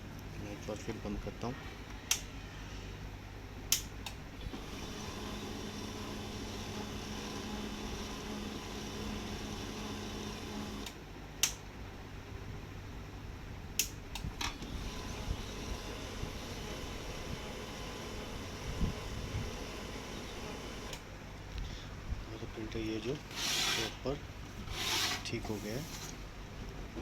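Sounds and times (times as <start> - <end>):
printer motor and gears running: 4.5 - 10.9, 14.6 - 21.0, 23.2 - 24.0, 24.6 - 26.2.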